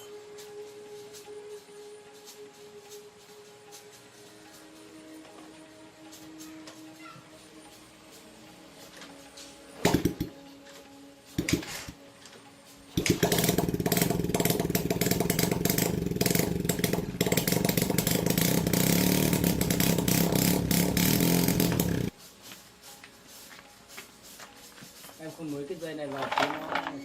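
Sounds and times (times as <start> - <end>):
small motorcycle engine: 9.8 - 10.4, 11.4 - 12.0, 13.0 - 22.1.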